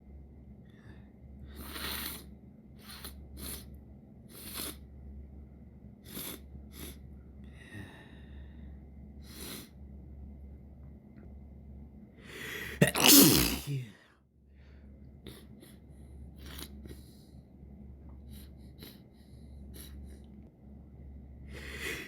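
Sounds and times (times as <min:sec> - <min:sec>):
person sniffling through runny nose: 0:01.5 - 0:03.7, 0:04.3 - 0:04.8, 0:06.0 - 0:07.0, 0:09.2 - 0:09.7, 0:12.3 - 0:13.9, 0:18.3 - 0:20.1, 0:21.6 - 0:22.0
voiced catch of breath: 0:07.5 - 0:09.7, 0:12.2 - 0:13.0.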